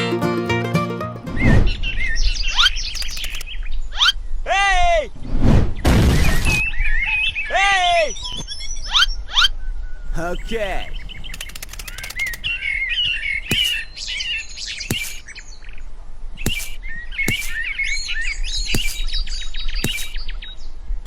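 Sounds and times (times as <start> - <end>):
small birds chirping: 1.3 - 4.5, 6.2 - 21.0
sharp taps: 13.5 - 13.8, 14.9 - 15.2, 16.4 - 17.6, 18.8 - 19.0, 19.8 - 20.2.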